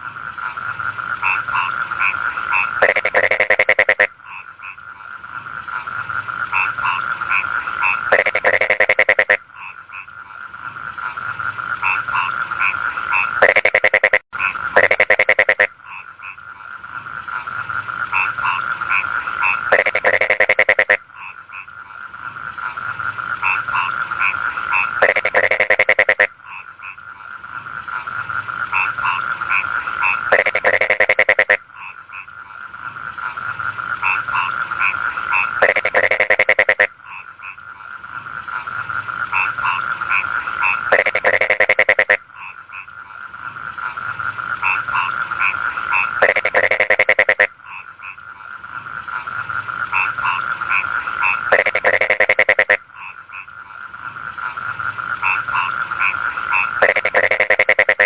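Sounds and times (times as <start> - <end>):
rapid frog croaks: 0.0 - 58.0
frog trill: 0.8 - 4.9, 6.4 - 10.2, 11.4 - 16.5, 17.7 - 21.7, 23.0 - 27.0, 28.6 - 32.3, 33.3 - 37.6, 39.0 - 43.0, 44.2 - 48.2, 49.5 - 53.6, 54.5 - 58.0.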